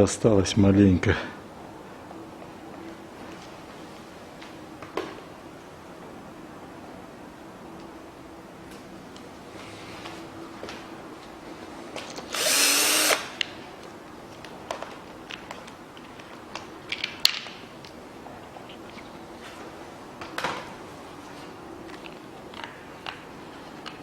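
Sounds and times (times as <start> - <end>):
handheld power tool burst: 12.3 - 13.4.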